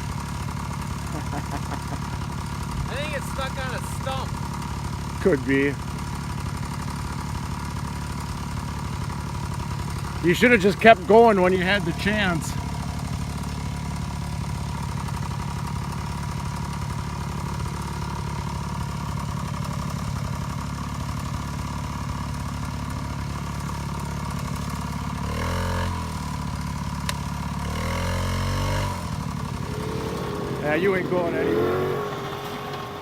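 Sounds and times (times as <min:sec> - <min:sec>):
snowmobile engine idling: 0:00.0 - 0:33.0
snowmobile engine revving: 0:02.9 - 0:04.3, 0:10.2 - 0:12.8, 0:25.3 - 0:26.1, 0:27.6 - 0:33.0.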